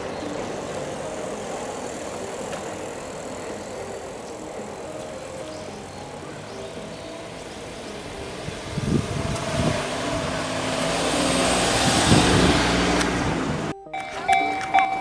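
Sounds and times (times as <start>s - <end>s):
train passing: 0.0s - 15.0s.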